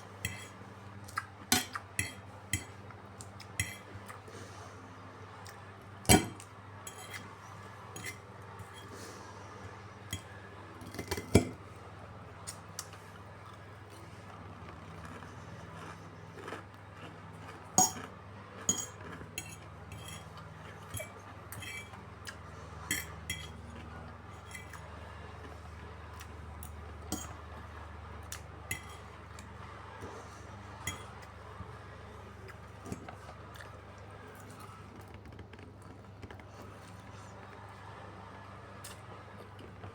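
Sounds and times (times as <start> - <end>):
low steady hum: 0.0 - 39.9
cutlery clinking against dishes: 0.2 - 0.6, 1.5 - 2.8, 3.5 - 3.9, 6.1 - 7.3, 7.9 - 9.0, 17.8 - 22.0, 22.9 - 23.8, 27.1 - 27.4, 28.7 - 29.2, 30.9 - 31.2.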